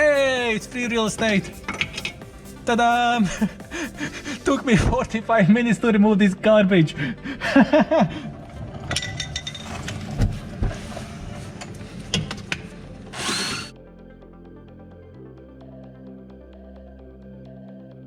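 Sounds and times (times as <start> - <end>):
background music: 0.0 - 18.0
hand tools clattering on metal: 1.6 - 2.2.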